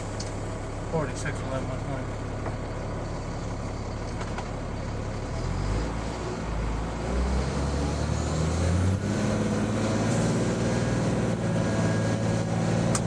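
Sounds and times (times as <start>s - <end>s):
vehicle engine revving up: 5.3s - 13.0s.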